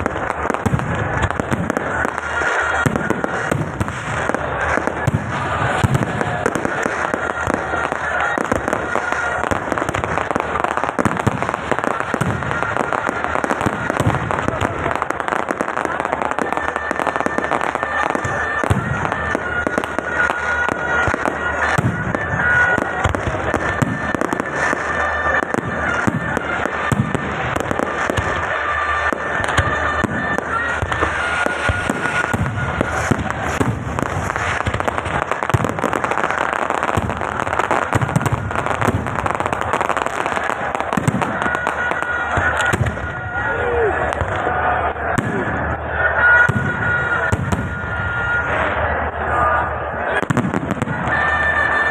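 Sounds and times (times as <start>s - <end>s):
fireworks crackling and popping: 0.0s - 51.9s.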